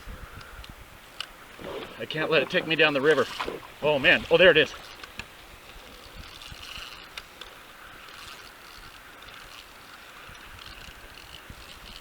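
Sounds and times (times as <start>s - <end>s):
river water rushing: 1.4s - 5.6s.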